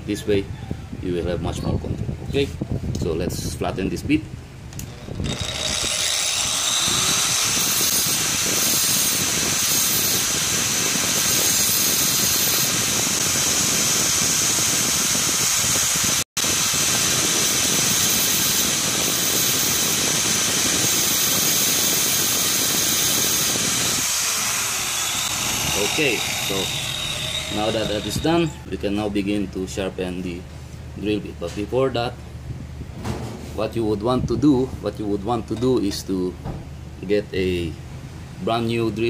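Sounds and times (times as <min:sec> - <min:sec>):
angle grinder grinding metal: 0:04.8 - 0:28.8.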